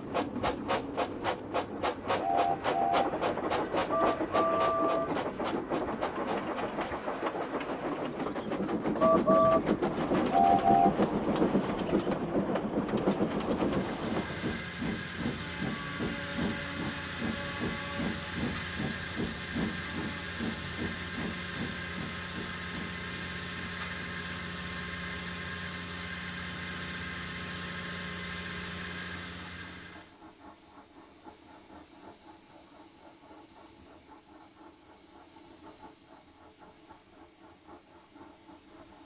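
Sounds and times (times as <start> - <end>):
steam hissing: 0.0 - 11.5, 27.8 - 39.0
steam locomotive chuffing: 0.0 - 39.0.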